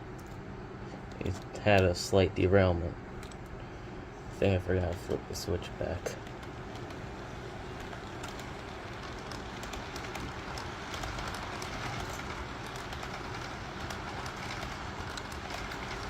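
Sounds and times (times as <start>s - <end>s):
model train running on track: 4.3s - 16.0s
wheels clicking over rails: 4.3s - 16.0s.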